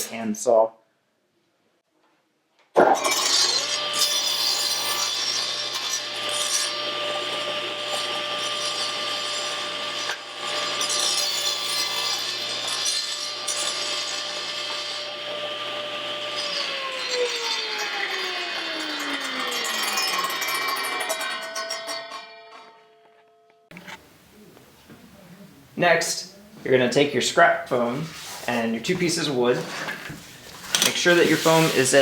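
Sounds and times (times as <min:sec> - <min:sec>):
table saw cutting wood: 0:02.8 - 0:23.9, 0:29.2 - 0:32.0
saw blade spinning down: 0:15.6 - 0:23.6, 0:29.6 - 0:32.0.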